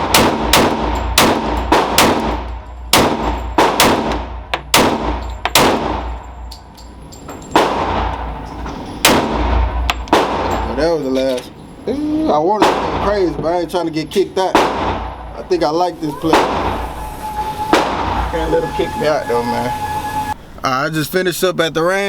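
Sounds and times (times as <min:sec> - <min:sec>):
pistol shots echoing indoors: 0:00.0 - 0:06.2.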